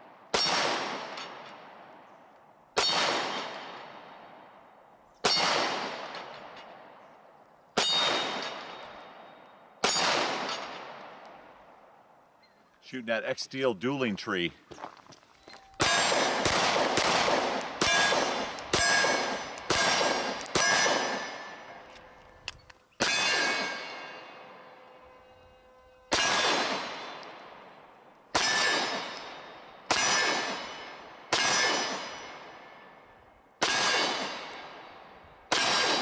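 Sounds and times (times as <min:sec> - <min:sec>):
pistol shots: 0:00.3 - 0:01.9, 0:02.8 - 0:04.3, 0:05.2 - 0:06.6, 0:07.8 - 0:09.2, 0:09.8 - 0:11.6, 0:15.8 - 0:24.3, 0:26.1 - 0:27.7, 0:28.3 - 0:32.7, 0:33.6 - 0:36.0.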